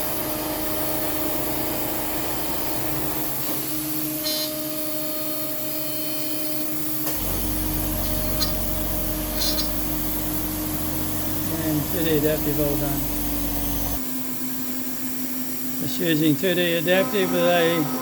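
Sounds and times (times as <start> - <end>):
mist coolant spray hissing: 0.0 - 14.0
cnc router spindle running: 0.0 - 18.0
deep hum: 7.1 - 15.8.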